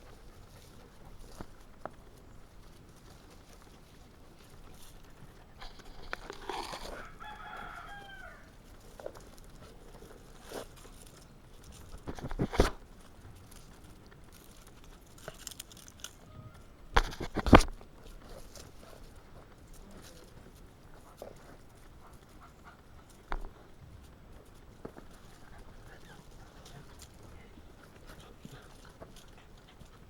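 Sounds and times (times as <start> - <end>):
drawn-out animal call: 2.8 - 10.4, 16.2 - 16.8, 18.6 - 30.0.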